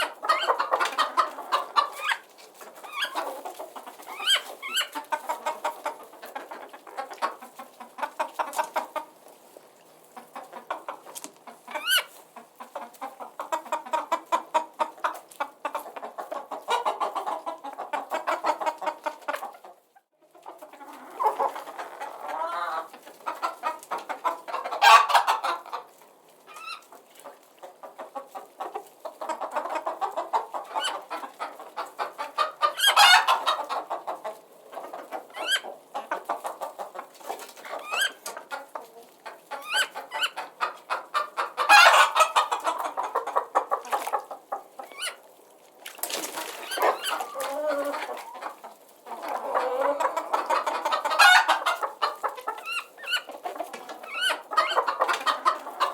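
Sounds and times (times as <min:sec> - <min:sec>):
loud chicken calls: 0:00.0 - 0:07.3, 0:11.7 - 0:12.2, 0:20.8 - 0:25.8, 0:29.2 - 0:37.0, 0:39.5 - 0:45.2, 0:46.3 - 0:55.9
chickens clucking: 0:00.0 - 0:55.9.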